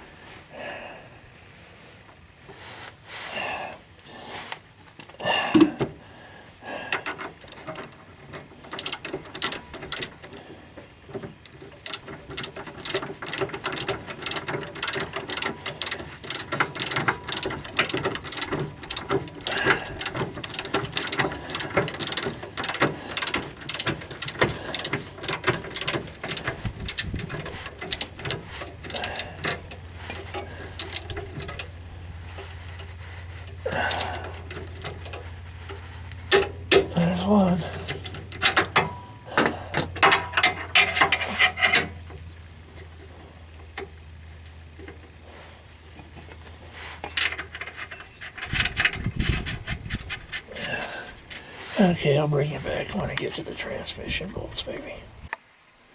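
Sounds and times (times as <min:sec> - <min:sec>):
ratchet wrench clicking: 0:07.0 - 0:10.4, 0:11.3 - 0:37.0.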